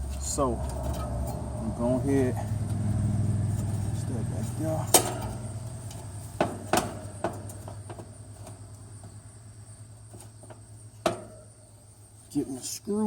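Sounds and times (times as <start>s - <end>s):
air conditioner motor hum: 0.0s - 13.0s
light metallic clicks and knocks: 4.8s - 9.2s.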